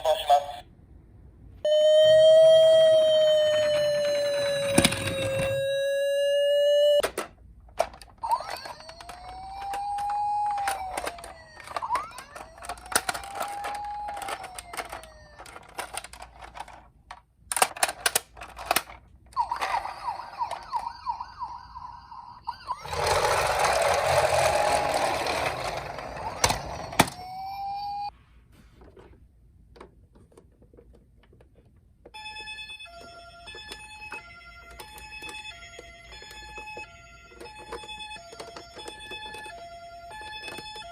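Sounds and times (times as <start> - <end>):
toy ambulance electronic siren: 1.7 - 7.1, 8.2 - 16.5, 19.4 - 28.1, 32.2 - 40.9
plastic toys clicking and rattling: 3.4 - 5.6, 7.0 - 21.0, 22.7 - 27.2, 32.4 - 40.9.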